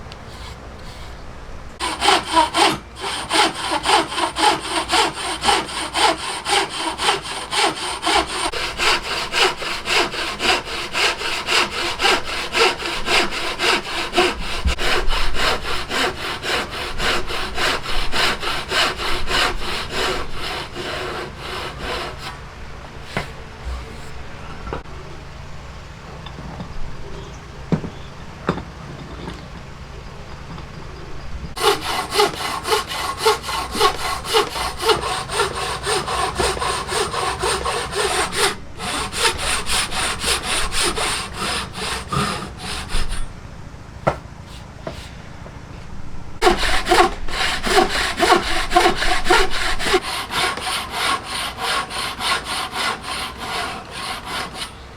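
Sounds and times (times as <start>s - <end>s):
hand saw cutting wood: 0.2s - 1.2s, 1.8s - 22.4s, 23.0s - 24.1s, 31.6s - 43.3s, 46.4s - 54.8s.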